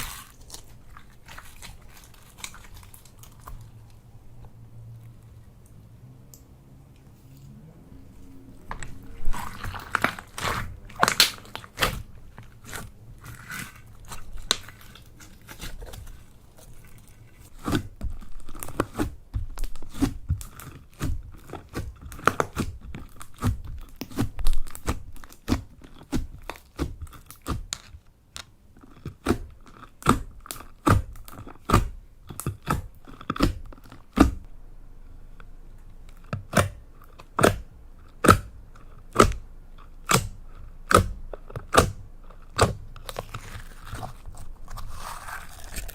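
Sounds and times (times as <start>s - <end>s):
slime popping and crackling: 0.0s - 3.7s, 8.7s - 16.8s, 17.4s - 27.9s, 36.4s - 45.9s.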